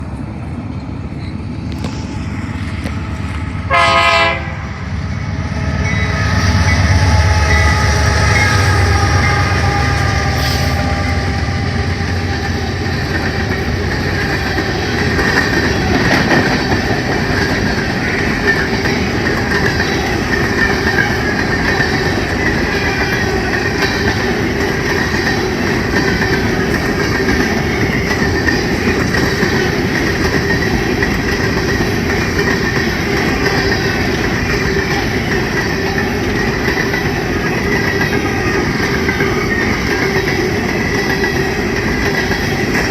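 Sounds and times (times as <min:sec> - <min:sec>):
heavy locomotive rumble: 0:00.0 - 0:42.9
train cars rolling clickety-clack: 0:00.0 - 0:42.9
locomotive horn blast: 0:03.7 - 0:04.9, 0:05.5 - 0:12.2.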